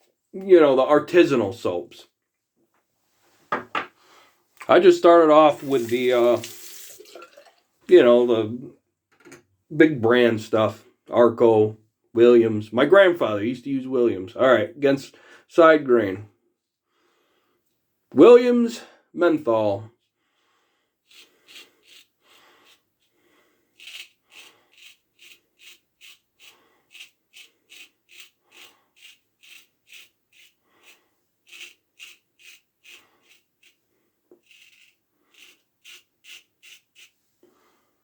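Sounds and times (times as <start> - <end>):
razor scraping lathered stubble: 5.5 - 7.0, 21.0 - 37.2.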